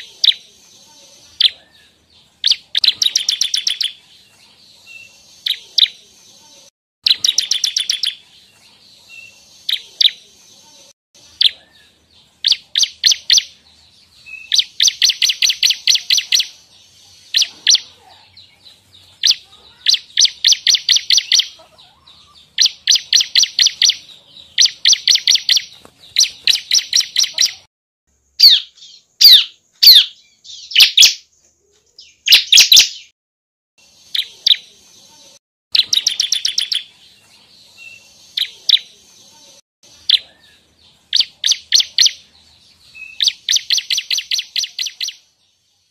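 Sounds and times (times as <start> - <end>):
bird singing high trills: 28.4 - 31.3.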